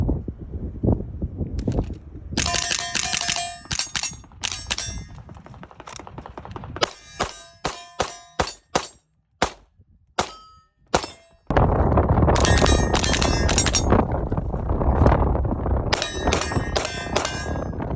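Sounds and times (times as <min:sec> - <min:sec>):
steel targets clanging: 0:02.4 - 0:05.1, 0:06.8 - 0:09.0, 0:10.2 - 0:11.5, 0:12.4 - 0:14.0, 0:16.0 - 0:17.8
rapid rifle shots: 0:02.4 - 0:09.6, 0:12.4 - 0:13.9, 0:16.0 - 0:17.7.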